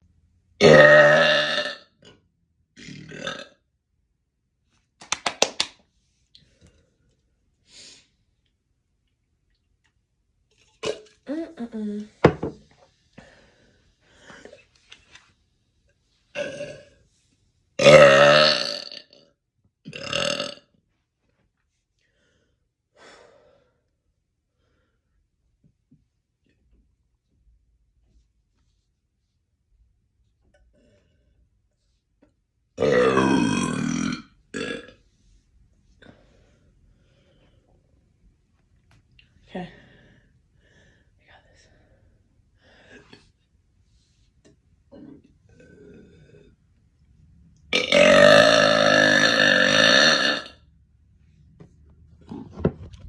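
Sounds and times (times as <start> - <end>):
loud deep burp: 0.6 - 2.0, 2.8 - 3.6, 16.4 - 17.0, 17.8 - 19.3, 19.9 - 20.7, 32.8 - 35.0, 44.9 - 46.6, 47.7 - 50.6.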